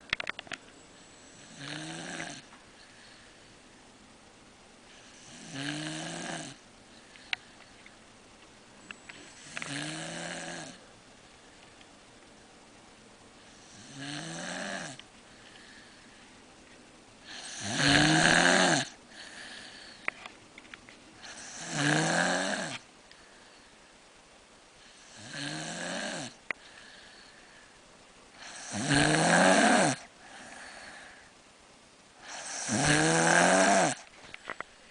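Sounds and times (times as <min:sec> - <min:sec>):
rasping snores: 0:01.3 - 0:02.5, 0:05.0 - 0:06.6, 0:09.3 - 0:10.8, 0:13.5 - 0:15.0, 0:17.2 - 0:19.6, 0:21.2 - 0:22.8, 0:24.9 - 0:26.4, 0:28.4 - 0:31.0, 0:32.2 - 0:34.0.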